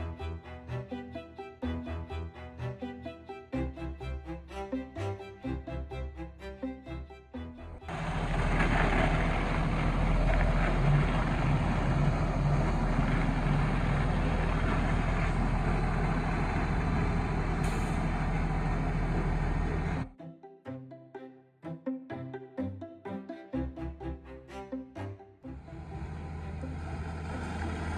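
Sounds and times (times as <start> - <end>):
diesel truck engine running: 7.9 - 20.0, 25.6 - 27.9.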